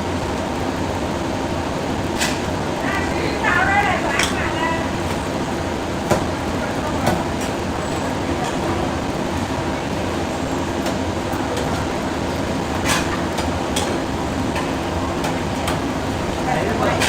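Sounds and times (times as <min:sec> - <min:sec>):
faint background voices: 0:02.8 - 0:10.4.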